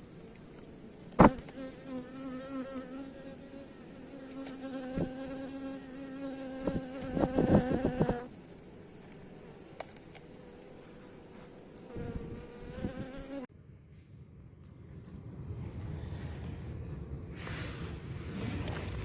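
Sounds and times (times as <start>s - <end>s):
bee buzzing in flight: 1.2s - 13.5s.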